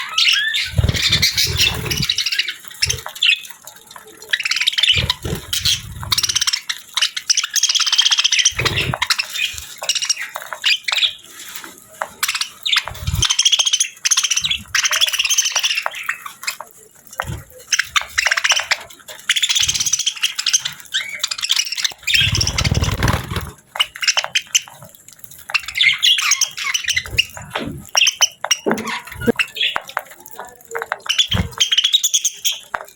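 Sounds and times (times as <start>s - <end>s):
budgerigars chirping: 0.0s - 3.5s, 19.3s - 24.7s.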